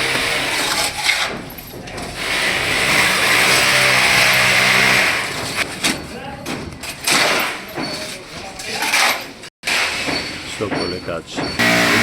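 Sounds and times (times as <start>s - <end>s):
construction machine engine running: 11.6s - 12.0s.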